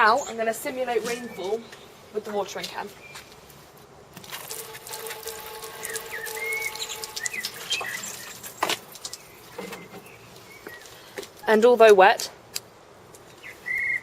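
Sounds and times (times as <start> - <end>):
water pattering on plastic case: 4.2 - 10.8.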